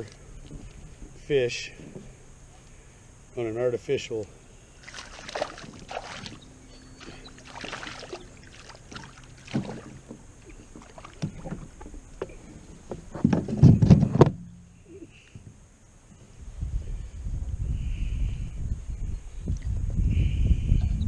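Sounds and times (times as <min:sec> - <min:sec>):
water splashing: 0:04.8 - 0:12.7.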